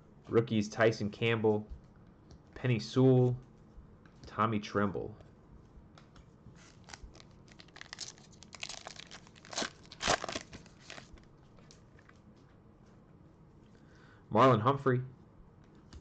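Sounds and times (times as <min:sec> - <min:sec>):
plastic wrappers crinkling and tearing: 0:06.6 - 0:11.3.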